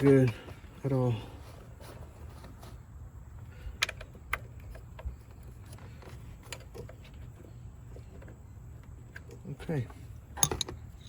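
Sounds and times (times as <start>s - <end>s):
hand tools clicking and knocking: 10.4s - 11.0s.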